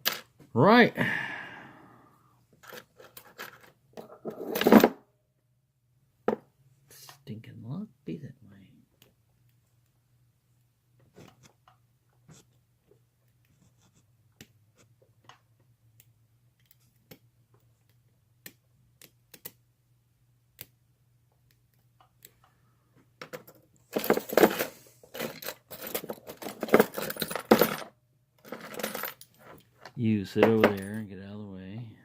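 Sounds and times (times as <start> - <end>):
clatter of small metal objects: 23.2 - 29.7.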